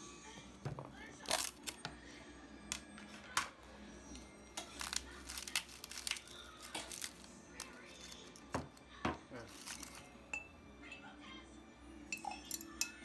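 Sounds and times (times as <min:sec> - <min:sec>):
soft background music: 0:00.0 - 0:13.0
dishes and utensils clinking: 0:04.1 - 0:11.2, 0:12.1 - 0:13.0.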